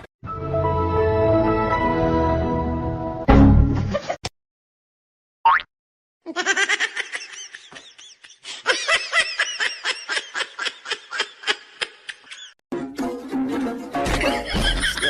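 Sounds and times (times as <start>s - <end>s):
high-pitched laughter: 6.3s - 12.6s, 14.2s - 15.0s.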